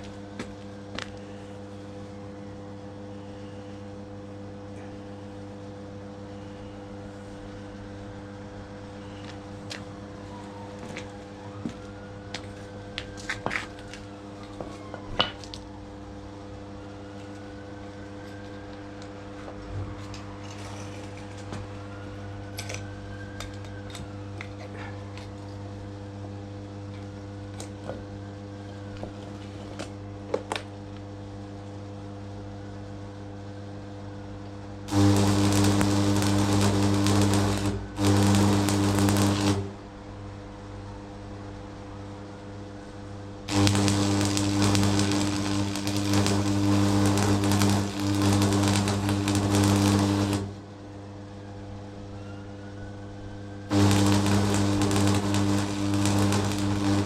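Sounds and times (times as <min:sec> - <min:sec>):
steady background hum: 0:00.0 - 0:57.0
electric hammer motor running: 0:34.9 - 0:39.8, 0:43.5 - 0:50.6, 0:53.7 - 0:57.0.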